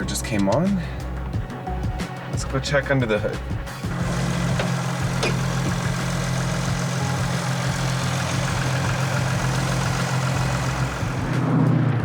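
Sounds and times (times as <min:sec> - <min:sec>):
van engine idling: 0:03.5 - 0:11.4.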